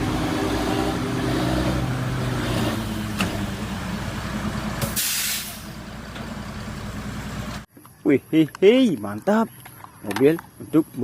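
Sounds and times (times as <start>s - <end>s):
truck engine running: 0.0s - 7.7s
air hiss: 4.8s - 5.7s.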